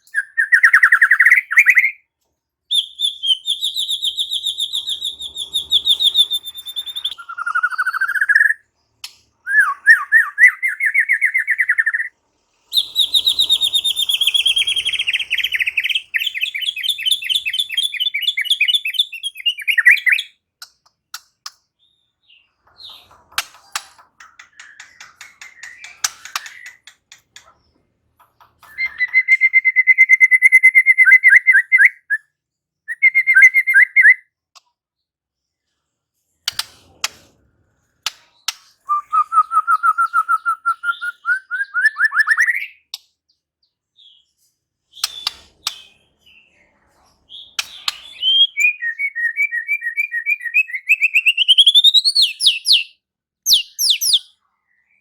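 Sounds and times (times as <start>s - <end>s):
bird singing whistled phrases: 0.0s - 2.0s, 2.7s - 8.6s, 9.4s - 12.1s, 12.7s - 20.4s, 28.6s - 32.3s, 32.9s - 34.3s, 38.8s - 42.9s, 47.4s - 54.3s.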